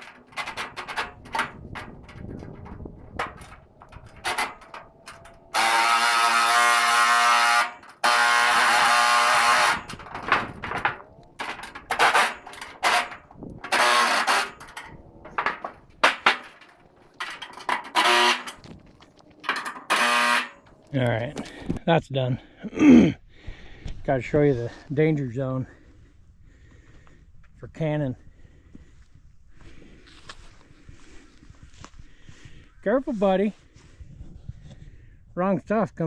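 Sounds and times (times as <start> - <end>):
cordless power driver running: 0.0 - 18.7, 19.5 - 20.8.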